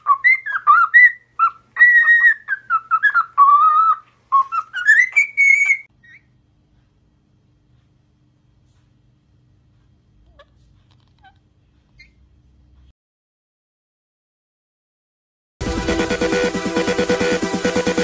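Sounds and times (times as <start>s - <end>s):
parrot whistling a tune: 0.0s - 6.3s.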